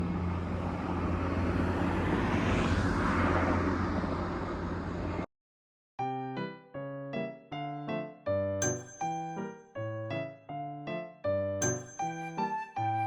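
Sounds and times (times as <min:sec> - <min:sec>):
chime-like music notes: 0:08.6 - 0:09.7, 0:11.6 - 0:13.0.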